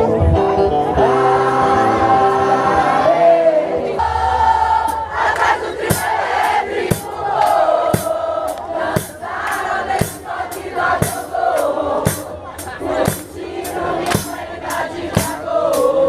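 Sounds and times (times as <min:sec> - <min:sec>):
crowd singing along: 0:00.0 - 0:16.0
percussion group drumming: 0:04.8 - 0:16.0.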